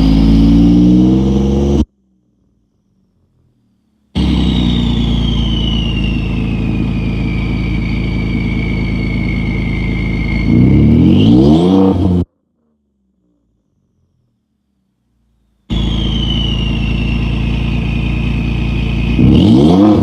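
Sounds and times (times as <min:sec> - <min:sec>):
engine revving: 0:00.0 - 0:01.9, 0:04.2 - 0:13.4, 0:15.7 - 0:20.0
turbo whistle: 0:04.2 - 0:11.9, 0:15.7 - 0:20.0.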